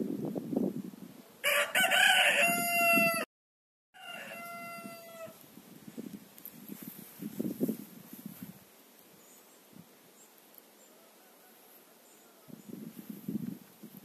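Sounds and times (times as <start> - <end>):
rooster crowing: 1.4 - 3.3, 4.0 - 5.4, 10.8 - 12.6.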